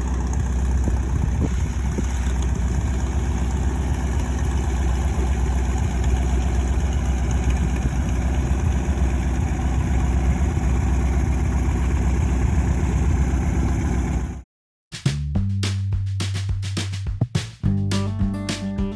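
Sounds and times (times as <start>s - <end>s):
small aircraft engine idling: 0.0s - 14.4s.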